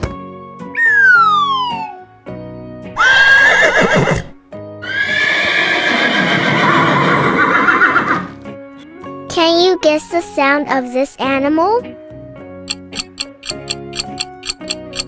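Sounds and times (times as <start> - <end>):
children's background music: 0.0 - 3.1, 8.2 - 15.0
cartoon slide-whistle: 0.8 - 2.0
horse whinnying: 3.0 - 8.4.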